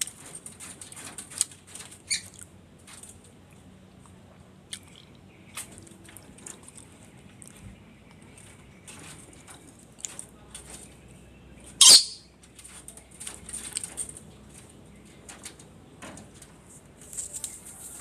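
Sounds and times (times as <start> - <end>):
parrot harsh loud call: 11.8 - 12.2
parrot soft high squeaks: 11.8 - 12.2
scratchy rustles: 16.2 - 18.0.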